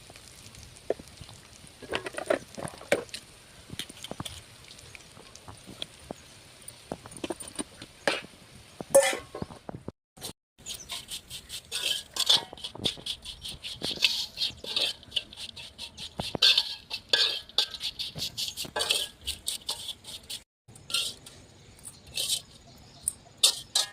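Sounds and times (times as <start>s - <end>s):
metal utensil scraping cookware: 8.9s - 9.5s, 10.6s - 23.9s.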